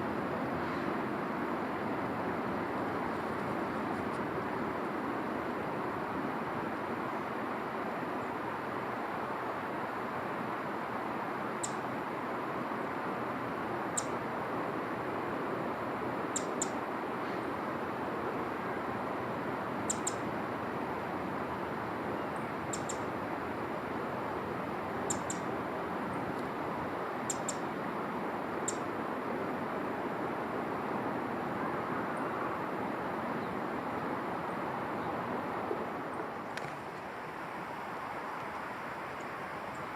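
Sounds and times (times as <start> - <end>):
steady rushing noise: 0.0 - 39.9
small bird high chirps: 14.0 - 14.2, 16.4 - 16.8, 19.9 - 20.2, 22.7 - 23.1, 25.1 - 25.5, 27.3 - 27.7.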